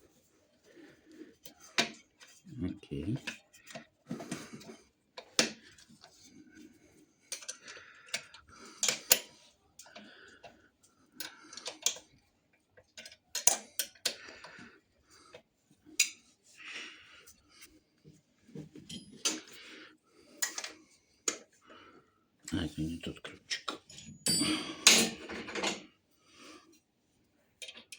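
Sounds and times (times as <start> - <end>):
metal tools clicking and clinking: 7.3 - 9.9, 13.0 - 14.2, 18.8 - 19.6, 23.5 - 25.8.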